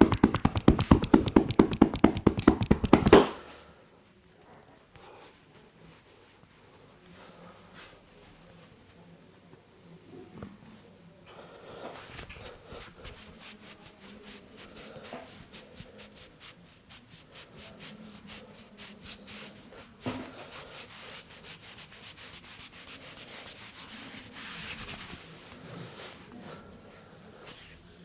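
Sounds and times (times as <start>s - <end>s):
hands rubbing skin: 0.0s - 3.4s.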